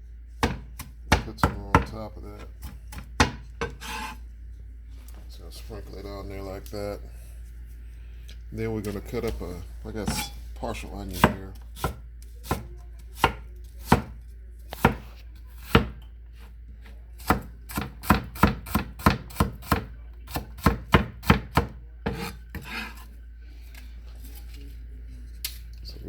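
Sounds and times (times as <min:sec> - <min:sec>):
knife chopping on cutting board: 0:00.4 - 0:02.0, 0:02.6 - 0:04.2, 0:11.1 - 0:16.0, 0:17.2 - 0:23.0.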